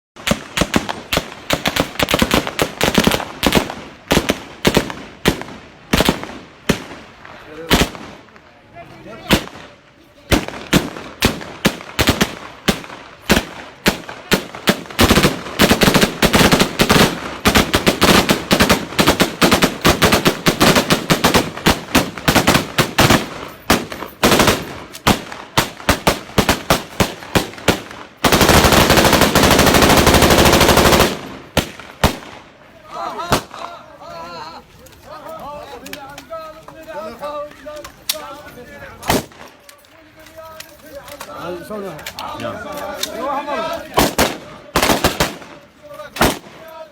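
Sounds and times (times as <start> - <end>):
automatic gunfire: 10.3 - 32.3, 44.0 - 45.5
gunshots in quick succession: 10.3 - 32.4, 44.0 - 45.6.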